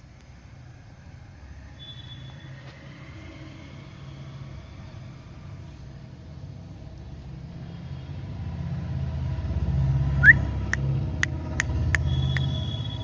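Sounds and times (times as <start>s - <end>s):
low engine rumble: 0.0s - 13.0s
short rising chirp: 10.2s - 10.4s.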